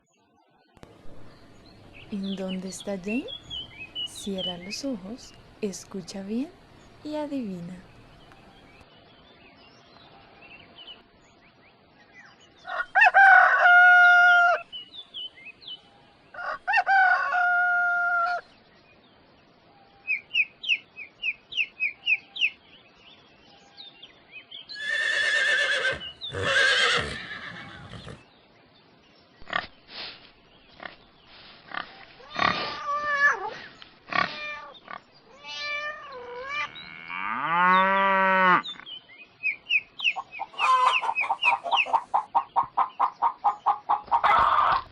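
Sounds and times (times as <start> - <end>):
rooster crowing: 12.6 - 14.7, 16.3 - 18.4, 44.2 - 44.9
loud harsh animal call: 24.8 - 28.2, 31.8 - 38.8, 40.5 - 42.3
chicken clucking: 40.2 - 44.9.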